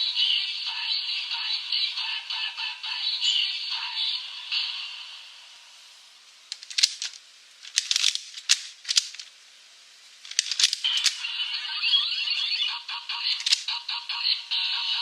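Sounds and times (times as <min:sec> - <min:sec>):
plastic toy clicks and rattles: 0:06.5 - 0:09.3, 0:10.2 - 0:11.3, 0:13.3 - 0:13.8
toy electronic sound effect: 0:10.5 - 0:15.0.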